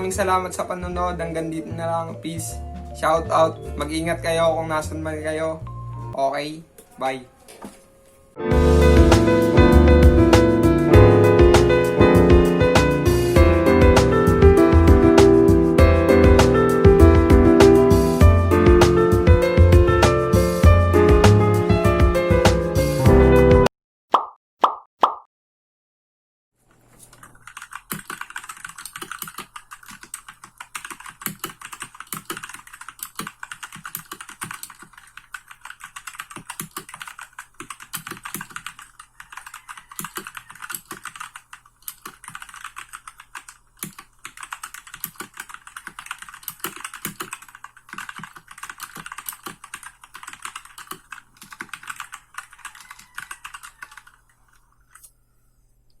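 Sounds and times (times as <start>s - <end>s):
fast typing on mechanical keyboard: 27.1s - 55.0s.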